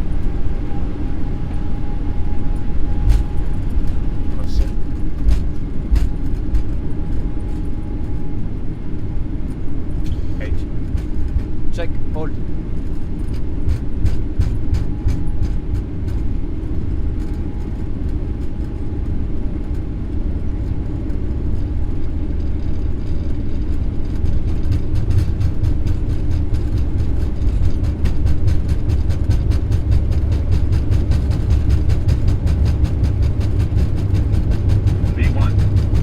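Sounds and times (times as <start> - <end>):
jet engines rumbling: 0.0 - 36.0
wheels thumping on runway: 4.6 - 6.8, 24.0 - 36.0.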